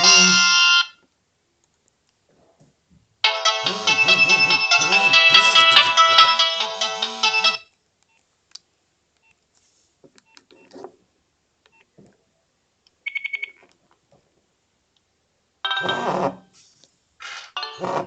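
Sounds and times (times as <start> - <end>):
mobile phone ringtone melody: 0.0 - 0.9, 3.2 - 7.6, 15.7 - 16.3, 17.6 - 18.0.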